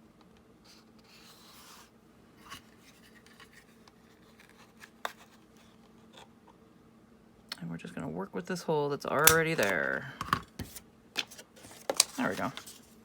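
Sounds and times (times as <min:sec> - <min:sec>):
paper rustling: 0:10.6 - 0:13.0.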